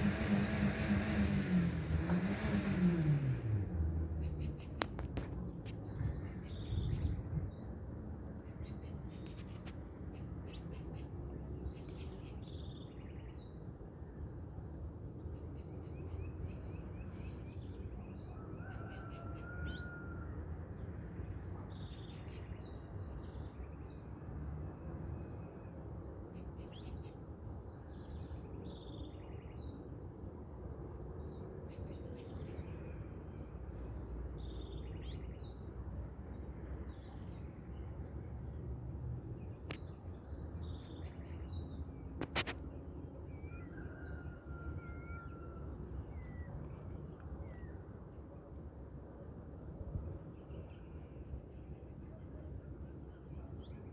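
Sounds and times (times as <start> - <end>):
birds chirping: 0.0 - 7.1.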